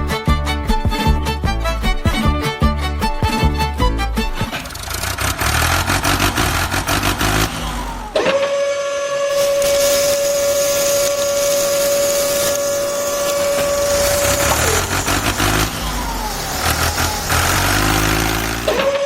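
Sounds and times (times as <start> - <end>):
truck engine rattling rumble: 1.3 - 8.2, 11.6 - 19.0
high-pitched engine whine: 4.5 - 19.0.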